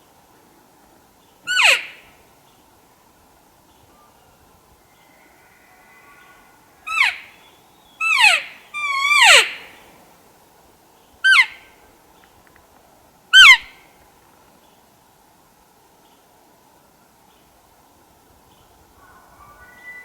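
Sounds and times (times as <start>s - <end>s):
elk calling: 1.5s - 2.0s, 5.0s - 7.4s, 8.0s - 9.8s.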